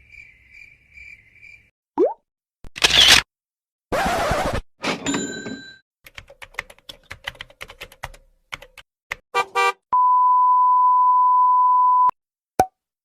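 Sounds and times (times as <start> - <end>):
computer keyboard typing: 6.1 - 9.2
long steady beep tone: 10.0 - 12.2.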